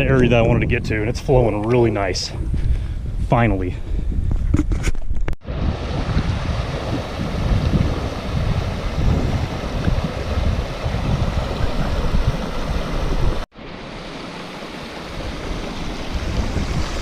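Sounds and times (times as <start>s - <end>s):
wind buffeting microphone: 0.0s - 13.5s, 15.0s - 17.0s
stream water rushing: 5.4s - 17.0s.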